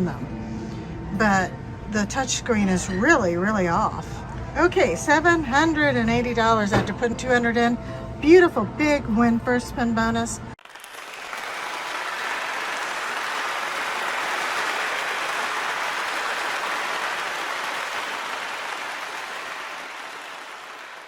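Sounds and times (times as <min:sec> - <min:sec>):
crowd applauding: 0:10.6 - 0:21.0.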